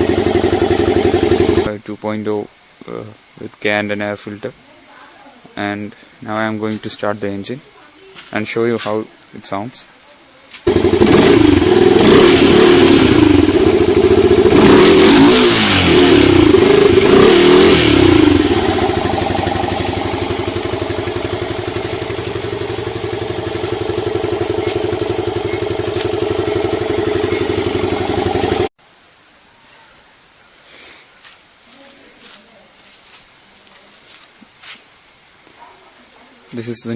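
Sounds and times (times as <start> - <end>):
motorcycle engine revving and idling: 0.0 - 1.7, 10.7 - 28.7.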